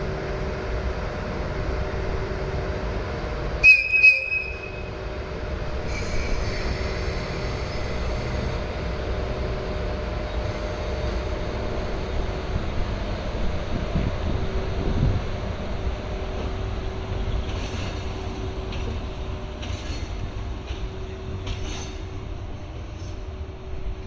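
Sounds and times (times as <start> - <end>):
train wheels rumbling on rail: 0.0 - 24.0
high-pitched wheel squeal: 3.6 - 4.9.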